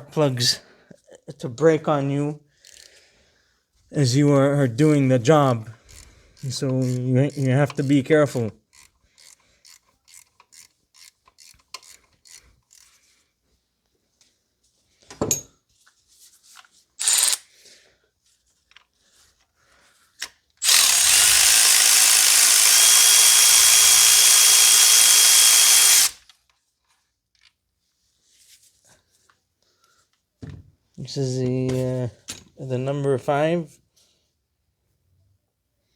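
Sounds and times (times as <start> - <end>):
ratchet clicking: 5.9 - 7.9, 8.7 - 12.9, 17.0 - 17.4, 20.6 - 26.2
power tool running: 17.0 - 17.4, 20.6 - 26.2.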